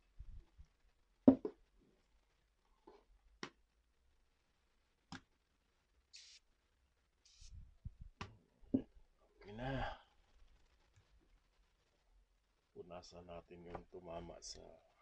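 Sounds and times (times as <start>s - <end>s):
knock: 1.3s - 1.6s
aerosol foam spraying: 6.2s - 6.4s, 7.3s - 7.6s.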